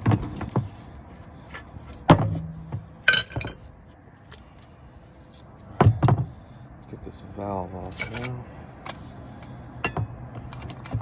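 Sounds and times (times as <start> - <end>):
metal tools clinking: 7.8 - 11.0.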